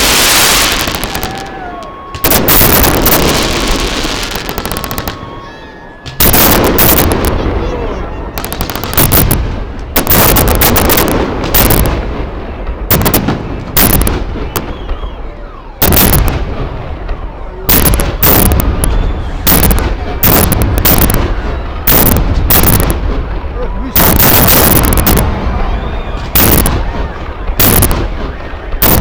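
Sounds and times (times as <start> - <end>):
fireworks bangs: 0.0 - 29.0
continuous rumble: 0.8 - 29.0.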